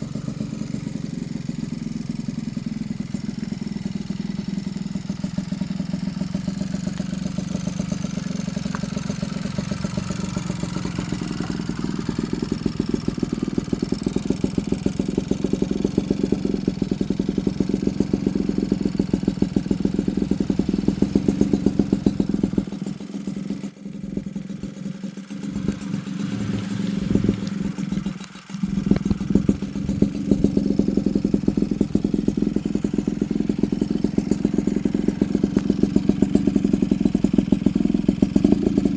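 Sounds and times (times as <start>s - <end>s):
two-stroke engine running: 0.0s - 38.9s.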